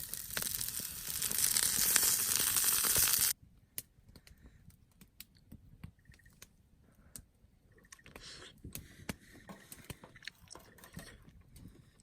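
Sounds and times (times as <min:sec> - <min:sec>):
food sizzling in a frying pan: 0:00.0 - 0:03.4.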